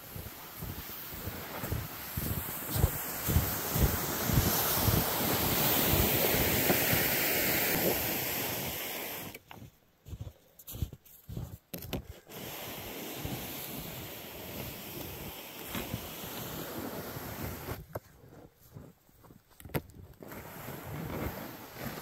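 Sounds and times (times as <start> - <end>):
wind buffeting microphone: 0.0 - 8.1.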